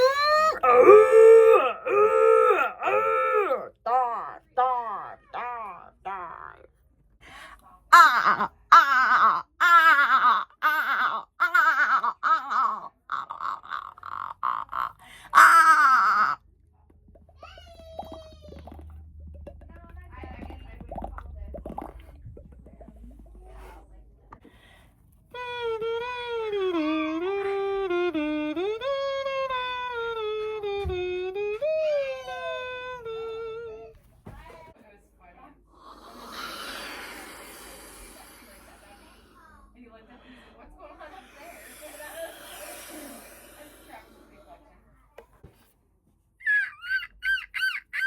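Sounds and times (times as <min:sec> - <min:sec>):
person making warbling wails: 0:00.0 - 0:06.7, 0:07.9 - 0:16.4, 0:46.4 - 0:48.0.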